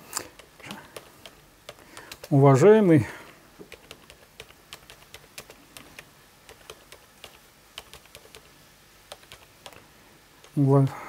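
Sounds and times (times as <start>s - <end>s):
typing on computer keyboard: 0.2s - 2.4s, 3.6s - 8.5s, 9.1s - 10.6s.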